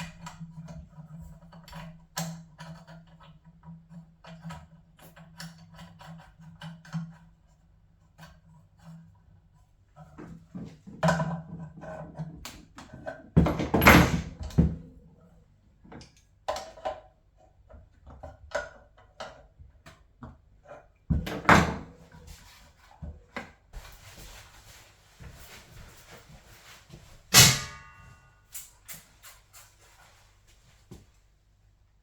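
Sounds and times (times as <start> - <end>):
clattering bangs: 27.3 - 28.2.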